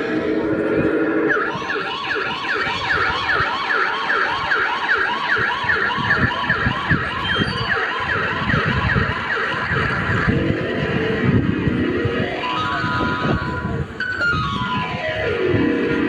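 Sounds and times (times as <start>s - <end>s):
yelping siren: 0.0s - 16.0s.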